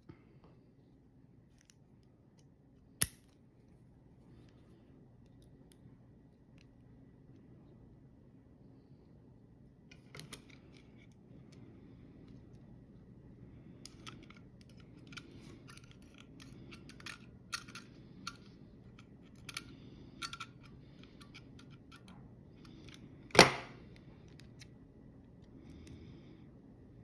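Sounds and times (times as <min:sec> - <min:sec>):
metallic clicks of lock picking: 0:03.0 - 0:03.4, 0:13.9 - 0:18.5, 0:19.3 - 0:22.1.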